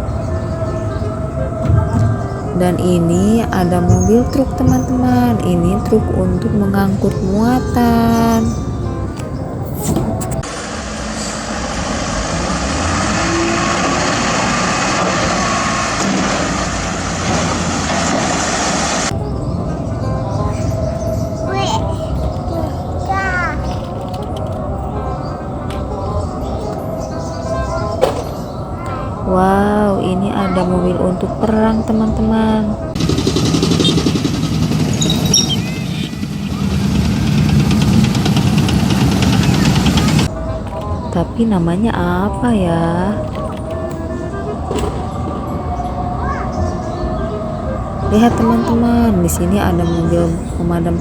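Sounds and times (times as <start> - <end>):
toy engine sound effect: 33.0 - 40.3.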